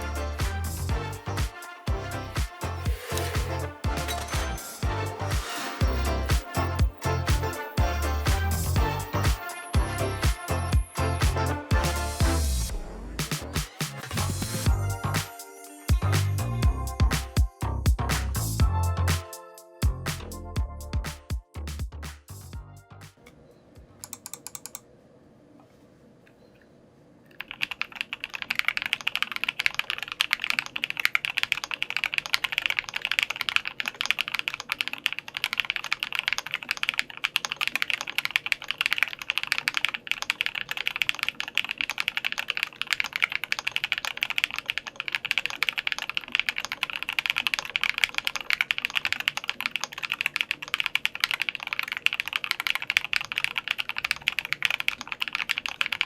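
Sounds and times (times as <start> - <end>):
typing on mechanical keyboard: 27.3 - 56.0.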